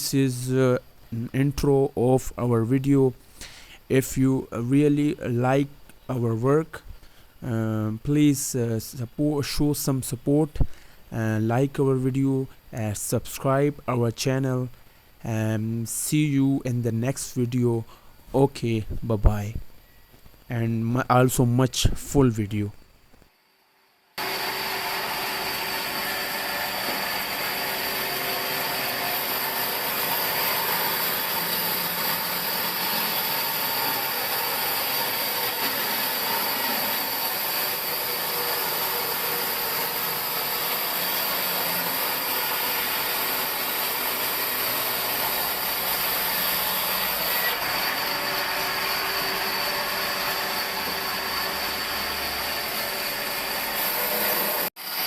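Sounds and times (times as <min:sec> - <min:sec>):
sawmill machinery running: 0:24.2 - 0:55.0.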